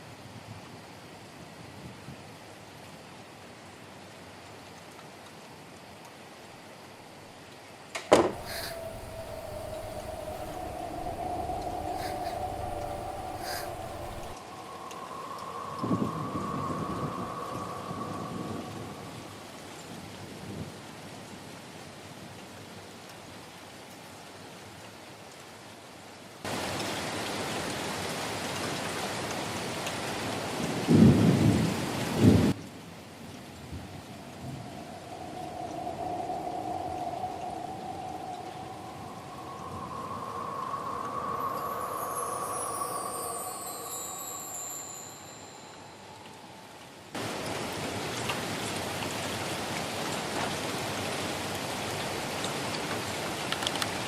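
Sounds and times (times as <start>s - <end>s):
rain falling: 2.5s - 54.0s
low rumble of thunder: 8.3s - 14.4s, 30.9s - 32.5s.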